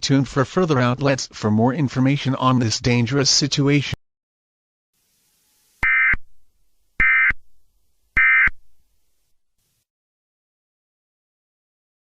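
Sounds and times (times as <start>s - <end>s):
buzzy digital data bursts: 5.0s - 6.4s.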